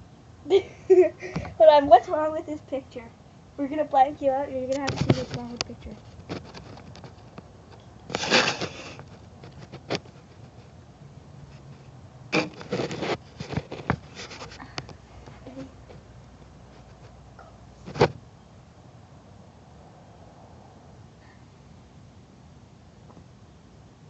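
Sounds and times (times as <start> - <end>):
rustling and rubbing: 4.3 - 18.2
knocks and scrapes: 4.7 - 10.8, 11.5 - 16.1, 16.7 - 17.2, 17.8 - 18.2.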